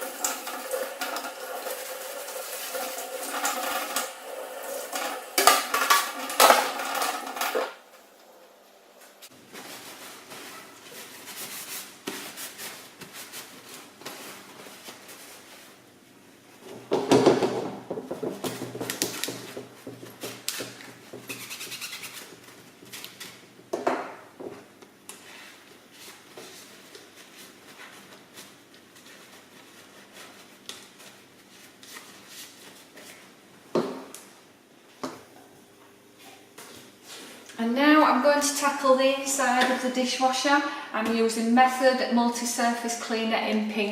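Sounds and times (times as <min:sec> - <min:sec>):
filters being scrubbed: 0:00.0 - 0:11.9.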